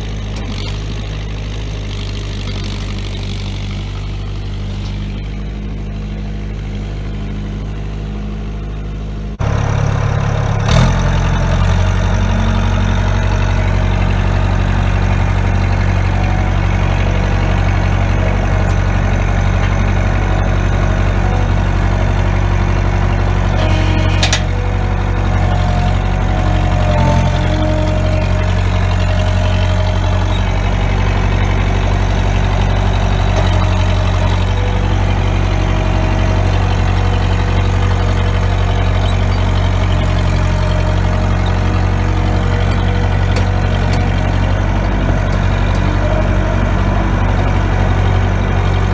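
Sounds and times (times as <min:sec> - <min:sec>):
diesel engine running: 0:00.0 - 0:48.9.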